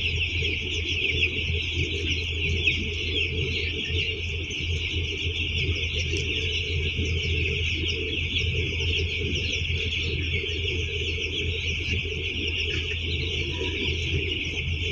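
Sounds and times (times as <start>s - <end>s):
chicks peeping: 0.0s - 14.9s
steady low hum: 0.0s - 14.9s.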